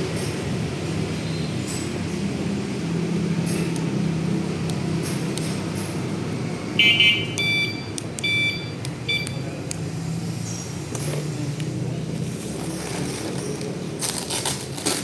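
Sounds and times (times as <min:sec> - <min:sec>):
short electronic beeps: 0:06.8 - 0:09.4.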